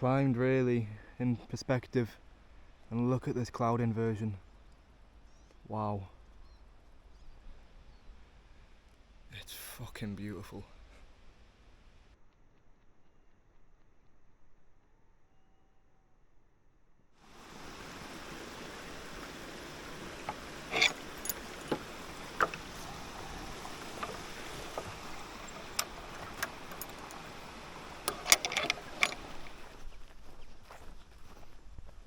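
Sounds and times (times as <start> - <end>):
rushing water: 17.2 - 29.8.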